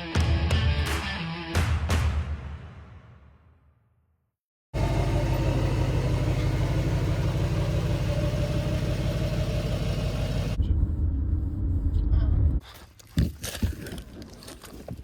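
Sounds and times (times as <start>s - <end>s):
engine running steadily: 4.8s - 12.0s.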